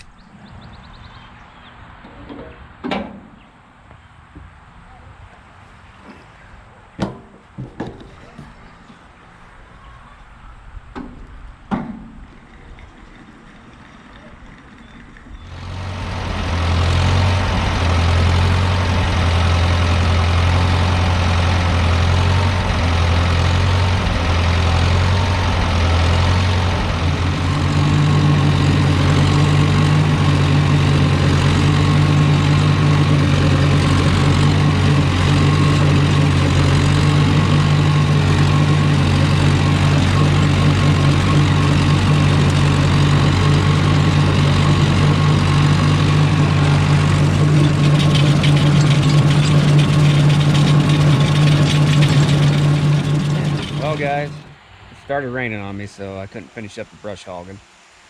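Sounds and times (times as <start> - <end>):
tractor engine running: 11.7 - 54.6.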